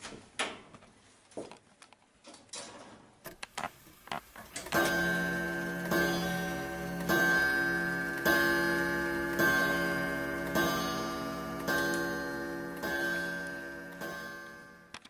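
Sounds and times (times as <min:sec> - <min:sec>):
scattered clicks and knocks: 0:01.5 - 0:15.0
clock ticking: 0:03.6 - 0:15.0
clock chiming: 0:04.4 - 0:15.0.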